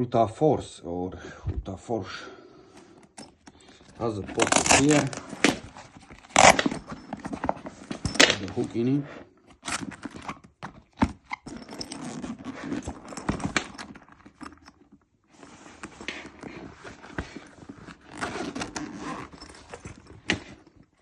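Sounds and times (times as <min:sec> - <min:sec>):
fabric bag rustling: 0:03.7 - 0:09.1.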